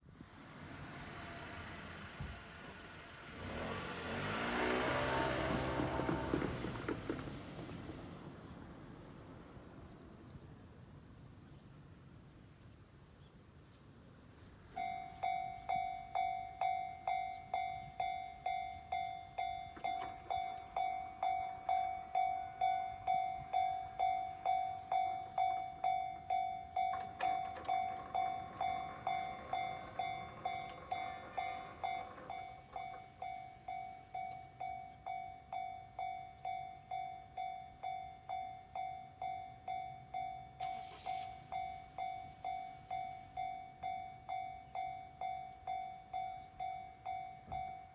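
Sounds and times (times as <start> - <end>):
rushing noise: 0.2 - 5.0
level crossing warning bell: 0.4 - 7.2, 14.7 - 47.9.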